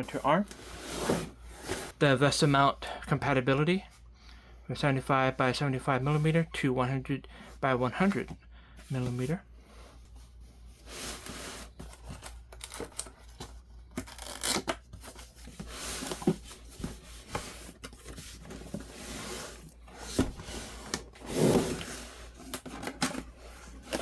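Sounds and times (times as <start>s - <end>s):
plastic and cardboard rustling: 10.0s - 24.0s.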